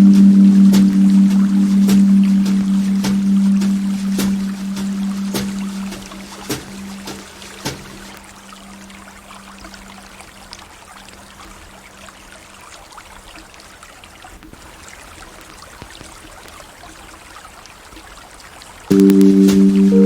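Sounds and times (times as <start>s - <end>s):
ambient music note: 0.0s - 10.3s, 18.9s - 20.0s
river water babbling: 0.0s - 15.8s.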